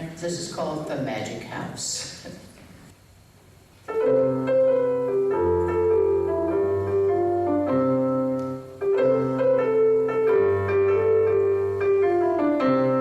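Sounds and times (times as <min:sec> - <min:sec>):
piano chords and melody: 0:03.9 - 0:13.0.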